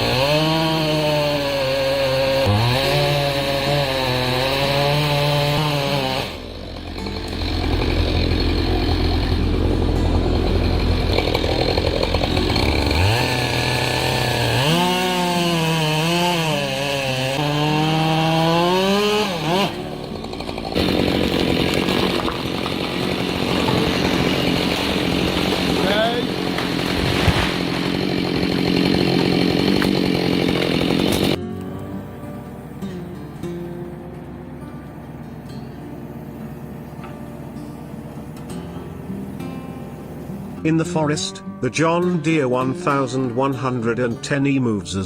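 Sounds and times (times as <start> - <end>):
chainsaw cutting wood: 0.0 - 40.7.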